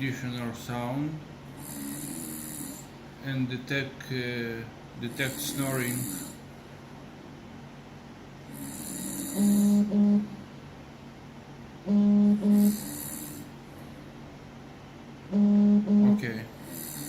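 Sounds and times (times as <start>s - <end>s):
air conditioner hum: 0.0s - 17.0s
person snoring: 1.5s - 3.0s, 5.0s - 6.5s, 8.5s - 10.0s, 12.2s - 14.0s, 16.4s - 17.0s.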